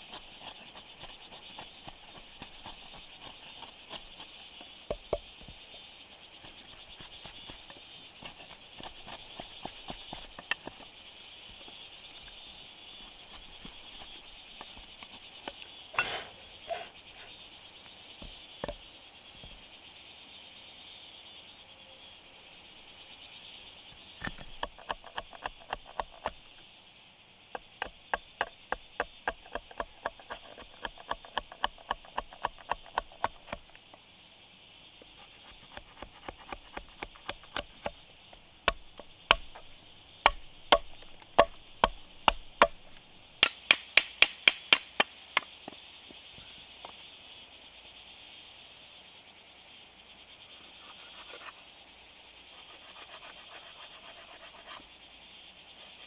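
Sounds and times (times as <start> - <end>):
insect chorus: 0.0 - 56.0
sharp taps and knocks: 18.2 - 18.8, 38.7 - 45.8.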